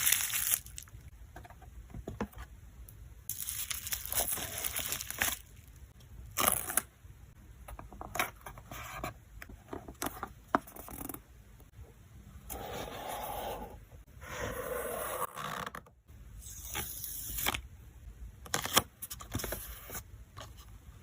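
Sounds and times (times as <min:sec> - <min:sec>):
plastic packaging crinkling: 0:00.0 - 0:01.0, 0:03.3 - 0:05.8.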